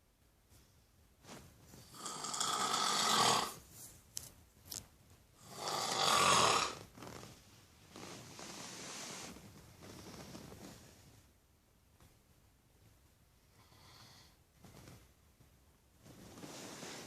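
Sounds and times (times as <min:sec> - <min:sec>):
person snoring: 0:01.9 - 0:03.6, 0:05.4 - 0:06.8
soft breath: 0:13.5 - 0:14.8.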